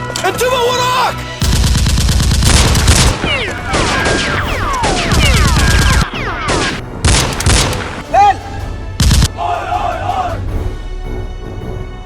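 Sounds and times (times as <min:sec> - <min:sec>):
automatic gunfire: 0:01.4 - 0:08.0.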